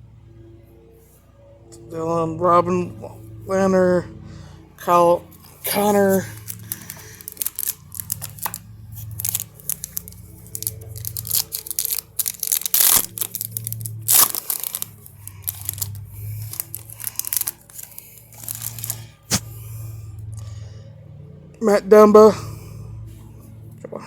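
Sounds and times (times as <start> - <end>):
wrapper tearing and crinkling: 5.3 - 19.4.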